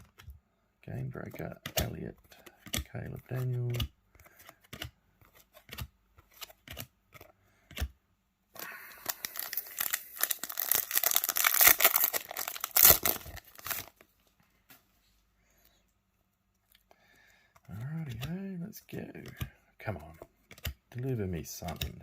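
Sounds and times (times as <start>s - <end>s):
card pack wrapper tearing: 8.6s - 13.9s.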